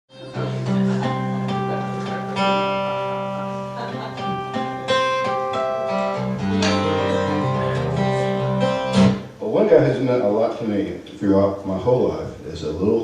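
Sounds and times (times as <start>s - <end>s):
acoustic guitar playing: 0.1s - 11.0s.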